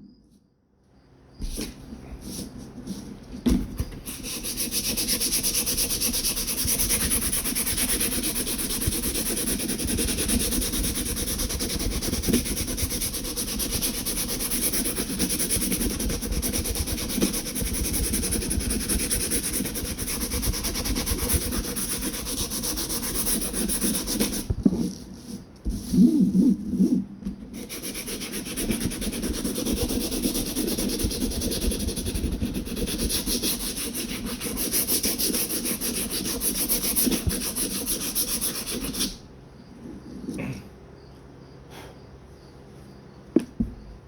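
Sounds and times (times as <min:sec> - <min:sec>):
sandpaper rasping on handle: 0:04.0 - 0:24.5, 0:27.6 - 0:39.2.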